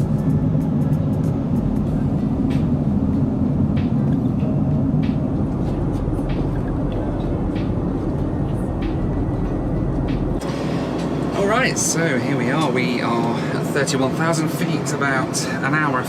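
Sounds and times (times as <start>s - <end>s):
aircraft cabin roar: 0.0s - 16.0s.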